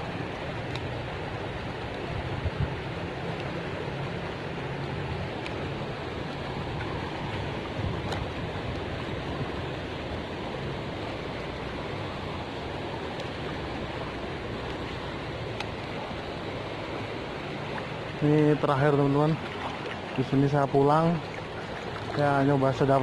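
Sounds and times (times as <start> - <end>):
river rushing: 0.0 - 23.0.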